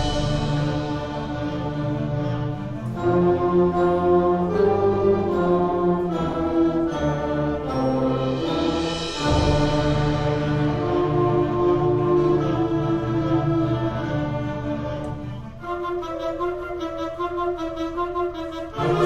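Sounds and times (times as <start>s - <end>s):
concert band with brass: 0.0s - 19.0s.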